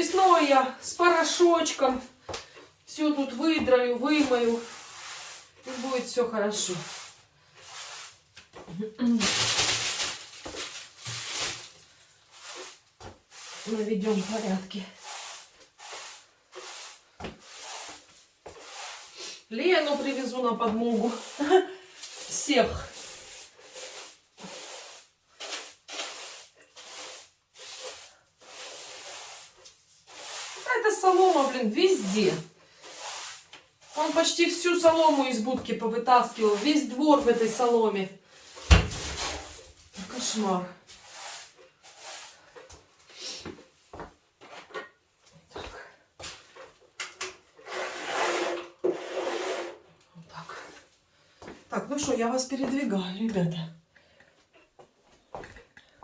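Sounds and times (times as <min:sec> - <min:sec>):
broom sweeping straw: 0:04.1 - 0:08.2, 0:09.2 - 0:35.5, 0:36.1 - 0:42.5.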